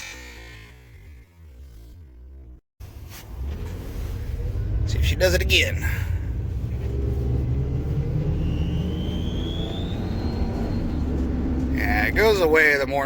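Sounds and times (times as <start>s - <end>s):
van engine accelerating: 0.0s - 13.0s
faint high squeal: 7.6s - 12.1s.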